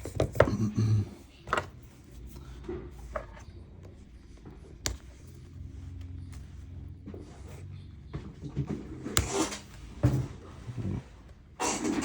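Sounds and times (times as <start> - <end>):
hands handling smartphone parts: 1.4 - 10.3.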